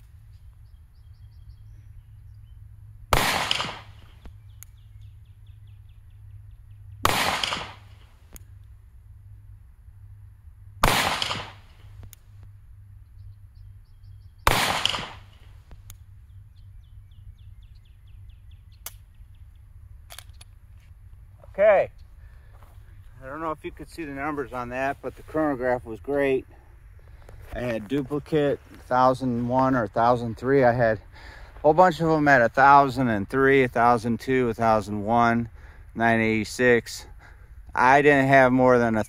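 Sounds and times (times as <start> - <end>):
gunshots with ringing tail: 3.1 - 4.1, 7.0 - 8.0, 10.8 - 11.8, 14.4 - 15.5.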